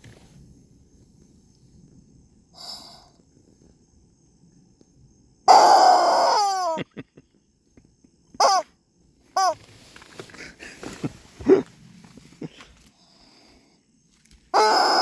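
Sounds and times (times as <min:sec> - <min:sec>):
rubber chicken harsh squawk: 0:05.5 - 0:06.8, 0:08.4 - 0:08.6, 0:09.4 - 0:09.6, 0:14.6 - 0:15.0
rubber chicken wheezy squeak: 0:08.4 - 0:08.6, 0:09.4 - 0:09.6.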